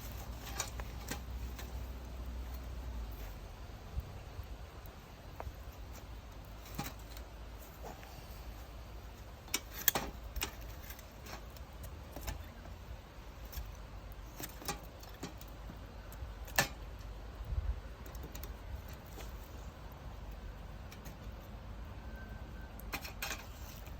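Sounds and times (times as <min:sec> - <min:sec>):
firewood crackling and popping: 0:00.0 - 0:17.2.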